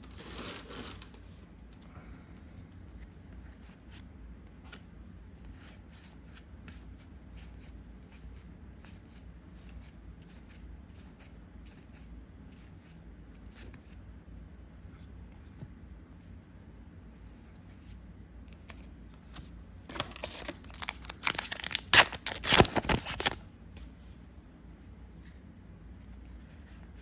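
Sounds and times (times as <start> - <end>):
low steady hum: 0.0 - 27.0
cards flicking and clicking: 19.2 - 23.4.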